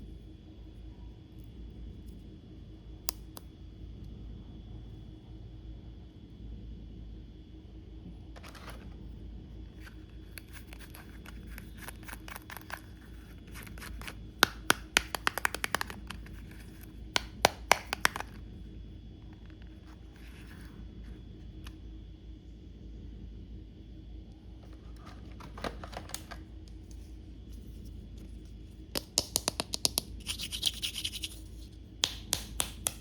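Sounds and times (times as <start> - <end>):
plastic toy pieces clicking: 17.5 - 18.3.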